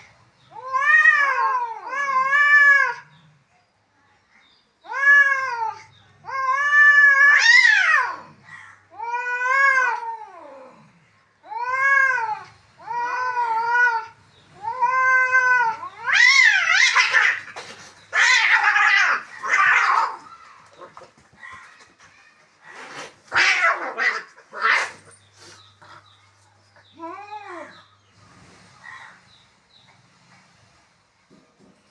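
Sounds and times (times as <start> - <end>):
cats yowling: 0.5 - 3.1, 4.9 - 10.5, 11.4 - 26.0, 27.0 - 27.8
cats screeching: 4.9 - 8.3, 11.5 - 26.0.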